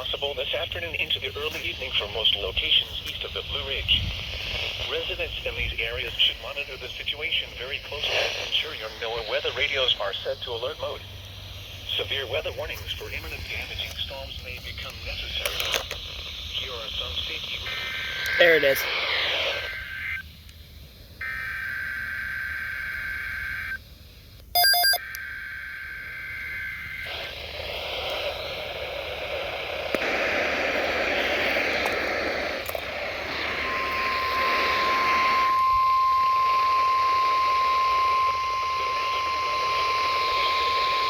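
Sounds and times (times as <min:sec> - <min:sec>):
hissing radio static: 0:00.0 - 0:41.0
buzzy data tones: 0:00.8 - 0:20.4, 0:21.2 - 0:23.8, 0:24.5 - 0:41.0
steady high alarm tone: 0:21.2 - 0:23.8, 0:24.6 - 0:27.2, 0:32.8 - 0:41.0
short beep: 0:24.6 - 0:25.2, 0:33.5 - 0:41.0.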